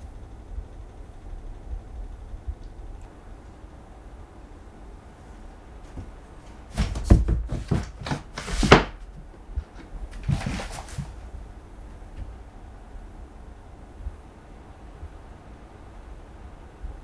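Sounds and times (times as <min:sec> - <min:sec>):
cat thumping on cardboard: 0:05.9 - 0:11.3.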